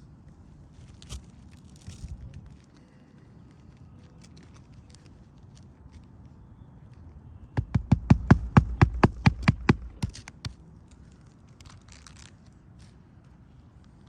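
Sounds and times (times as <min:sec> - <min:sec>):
faint rustle: 0:00.0 - 0:07.0
hammer striking nails: 0:07.6 - 0:10.6.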